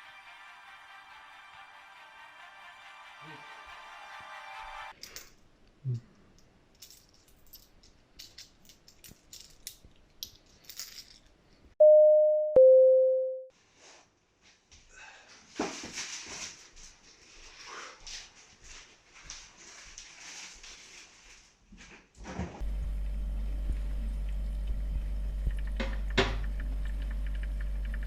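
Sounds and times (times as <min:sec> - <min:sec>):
two-note electronic chime: 0:11.8 - 0:13.5
rustling: 0:15.5 - 0:22.1.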